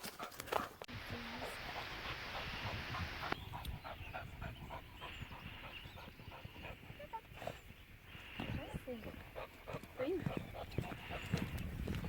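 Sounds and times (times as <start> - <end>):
dog panting: 0.0 - 7.7, 8.5 - 11.6
hiss: 1.0 - 3.4.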